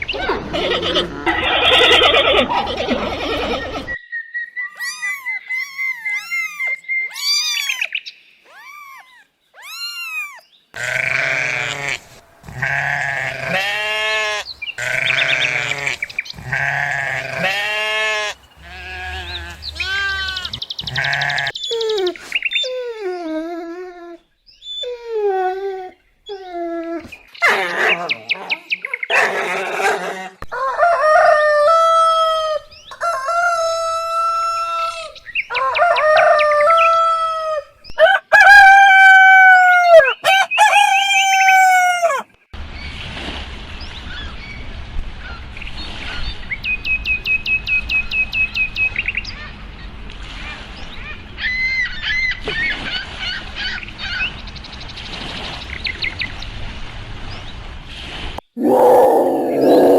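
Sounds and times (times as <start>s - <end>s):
small birds chirping: 3.1s - 11.1s, 18.4s - 22.8s
rooster crowing: 30.5s - 42.3s, 58.6s - 59.9s.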